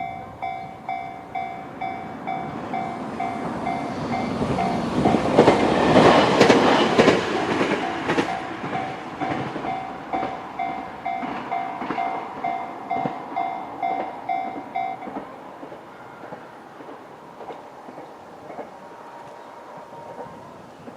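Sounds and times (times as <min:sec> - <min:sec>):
crossing warning bell ringing: 0:00.0 - 0:16.4
train passing over crossing: 0:00.0 - 0:20.9.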